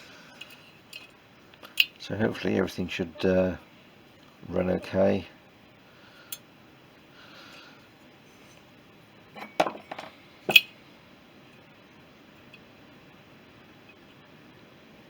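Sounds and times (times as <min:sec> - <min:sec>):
small metal parts clinking: 0:00.4 - 0:01.9, 0:09.4 - 0:10.7.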